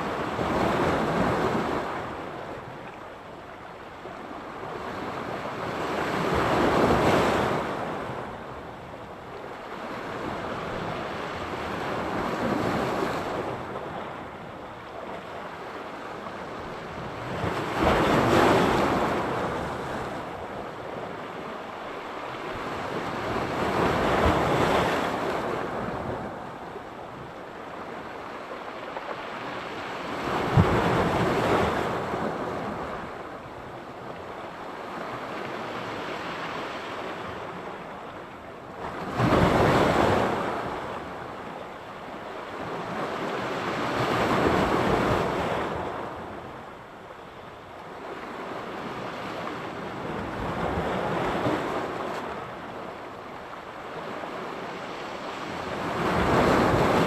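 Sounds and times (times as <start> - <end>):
waves breaking on shore: 9.4 - 57.0.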